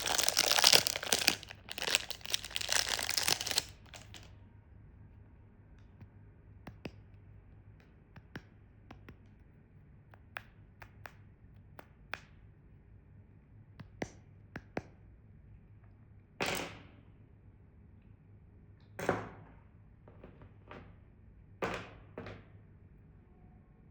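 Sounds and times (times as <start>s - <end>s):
candy packaging taps and clicks: 0.0s - 4.3s, 6.7s - 7.2s, 7.8s - 9.4s, 10.1s - 12.4s, 13.8s - 15.0s
packaging rustling: 0.0s - 4.3s.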